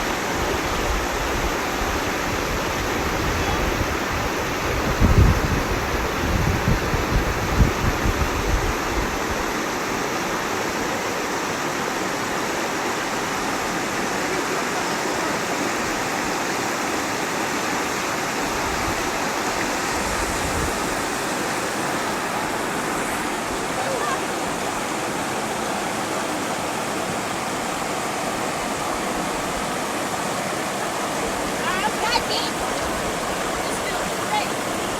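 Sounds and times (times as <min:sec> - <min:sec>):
wind bumps on microphone: 0:00.0 - 0:09.6, 0:18.5 - 0:21.2
rushing water: 0:00.0 - 0:34.9.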